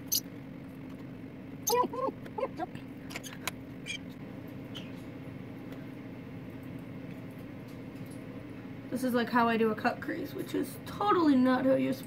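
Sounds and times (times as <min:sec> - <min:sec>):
parrots chirping and squeaking: 0:00.0 - 0:00.2, 0:03.1 - 0:04.1
low room hum: 0:00.0 - 0:12.0.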